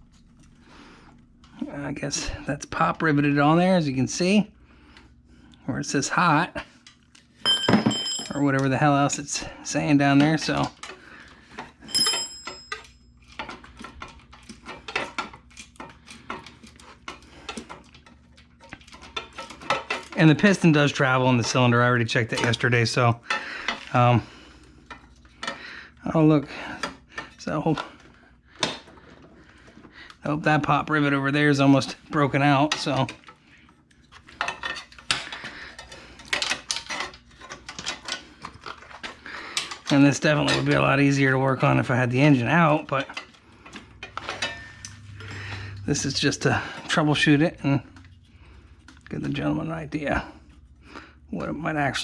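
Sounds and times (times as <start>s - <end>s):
metal tools clinking and scraping: 6.8s - 9.1s, 11.6s - 24.1s, 34.0s - 48.0s
metal tools clinking: 7.4s - 8.8s, 11.8s - 13.6s, 44.0s - 46.7s.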